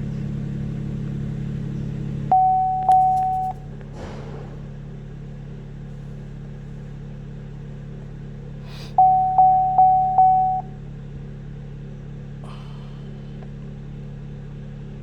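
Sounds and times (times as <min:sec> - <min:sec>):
low electronic hum: 0:00.0 - 0:03.9, 0:05.4 - 0:15.0
held electronic beep: 0:02.3 - 0:03.6, 0:09.0 - 0:10.7
short repeated beeps: 0:02.3 - 0:03.6, 0:09.0 - 0:10.7.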